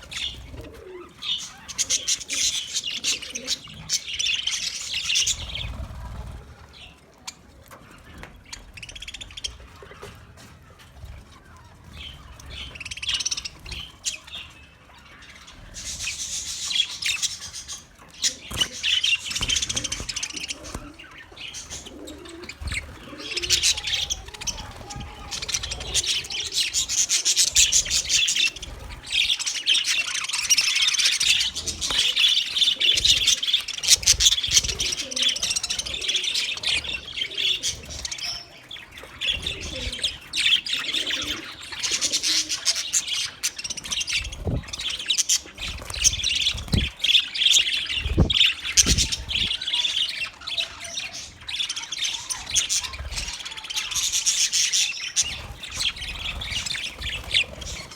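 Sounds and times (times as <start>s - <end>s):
budgerigars chirping: 12.0s - 57.9s.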